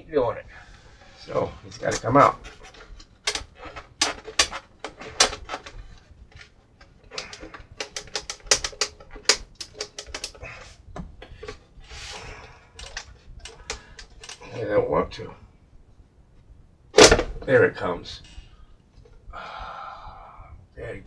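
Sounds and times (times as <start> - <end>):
clicks and knocks of tools on plastic: 1.8 - 11.6, 12.8 - 14.4.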